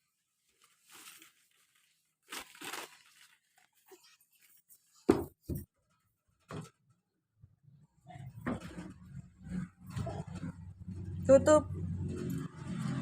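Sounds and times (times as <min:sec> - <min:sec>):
packaging crinkling: 0:00.5 - 0:04.5.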